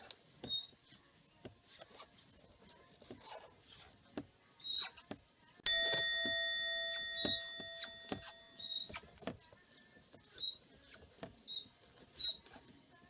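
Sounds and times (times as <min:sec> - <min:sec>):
small bell bowl chime: 0:05.6 - 0:09.0.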